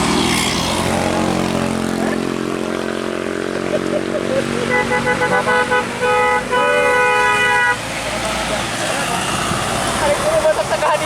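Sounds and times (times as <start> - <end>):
bus engine passing: 0.0 - 11.0
musical air horn playing tune: 4.6 - 7.8.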